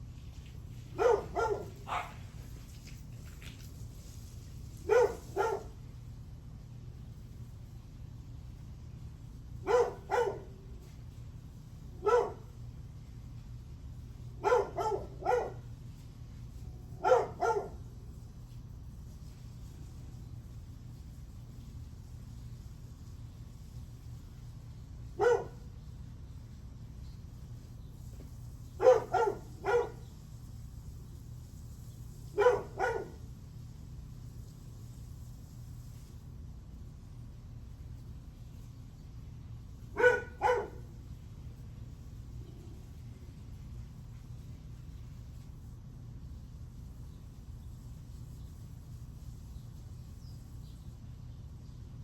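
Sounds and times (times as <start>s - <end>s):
low background hum: 0.0s - 52.0s
dog barking: 1.0s - 2.3s, 4.8s - 5.8s, 9.6s - 10.6s, 12.0s - 12.5s, 14.4s - 15.7s, 17.0s - 17.9s, 25.2s - 25.7s, 28.8s - 30.1s, 32.4s - 33.2s, 40.0s - 40.9s.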